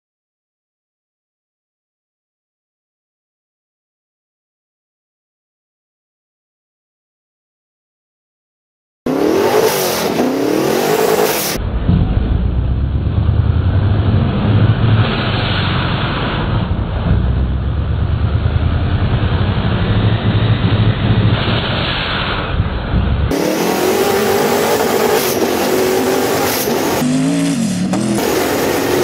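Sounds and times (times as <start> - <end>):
engine revving: 9.1 - 29.0.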